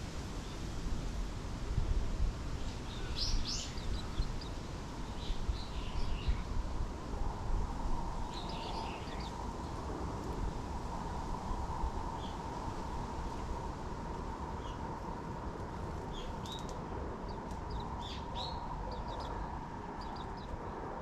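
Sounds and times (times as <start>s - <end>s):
songbirds chirping: 2.4s - 6.7s, 7.3s - 9.9s, 14.2s - 21.0s.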